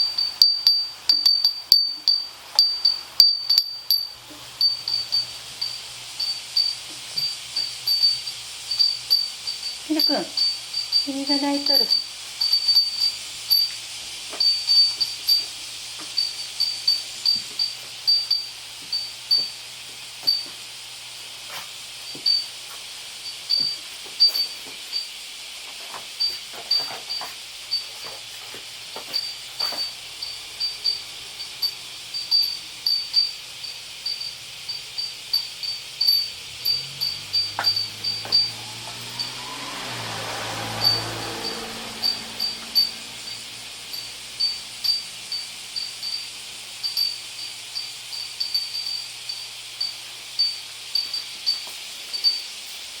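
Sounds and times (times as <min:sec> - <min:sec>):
cicadas buzzing and chirping: 0:00.0 - 0:53.0
low hum: 0:36.2 - 0:45.4.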